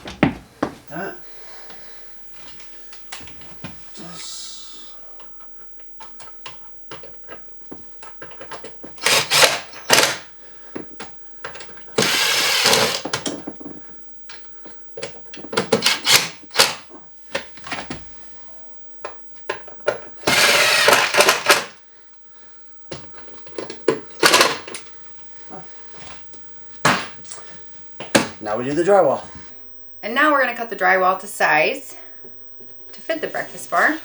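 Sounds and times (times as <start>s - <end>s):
power drill running: 9.0s - 10.2s, 12.0s - 13.1s, 20.2s - 21.8s.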